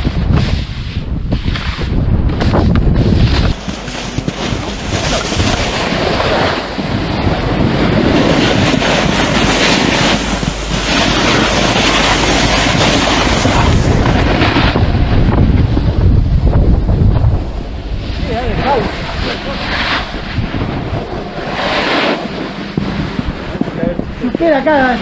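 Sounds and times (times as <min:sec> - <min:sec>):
snowboard carving over snow: 0:00.0 - 0:25.0
wind on microphone: 0:00.0 - 0:25.0.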